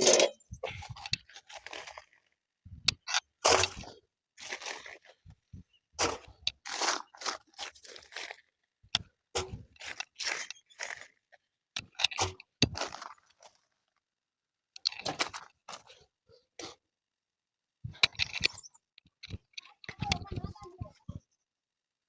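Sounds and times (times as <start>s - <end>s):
ingredients crunching in a bucket: 0.9s - 2.3s, 4.4s - 5.2s, 6.1s - 8.6s.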